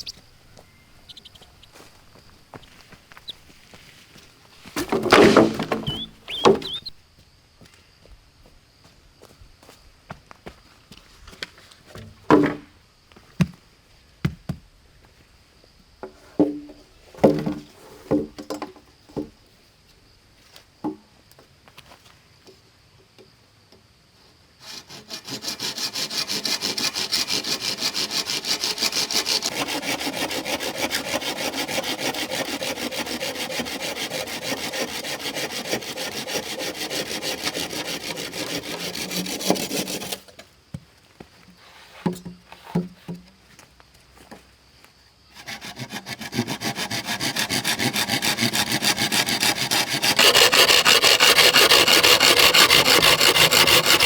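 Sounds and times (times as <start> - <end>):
hand tool rasping wood: 0.0 - 7.0, 24.6 - 40.4, 45.4 - 54.0
knocks: 4.8 - 6.8.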